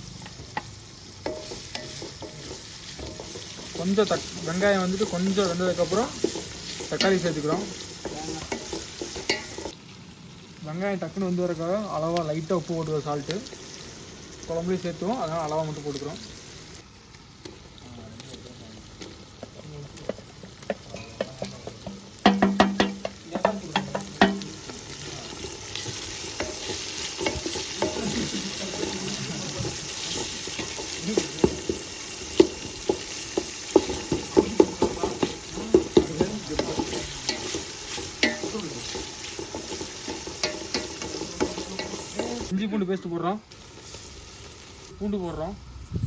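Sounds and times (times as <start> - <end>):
food sizzling in oil: 0.0 - 46.0
ladle scraping and knocking pot: 20.1 - 24.5, 32.4 - 42.5.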